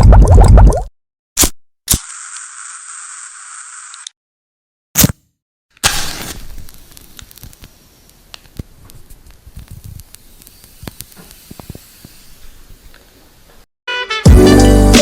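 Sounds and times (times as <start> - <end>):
hissing with crackles and pops: 5.8 - 13.7.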